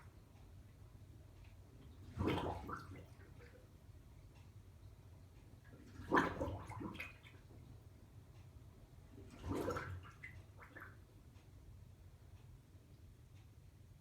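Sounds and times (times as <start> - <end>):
watery bubbling and gurgling: 2.0 - 3.6, 5.8 - 7.5, 9.2 - 11.0.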